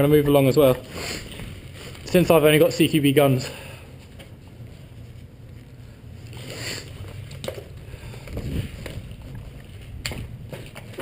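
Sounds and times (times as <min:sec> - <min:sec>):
clothing and gear rustling: 0:03.9 - 0:11.0.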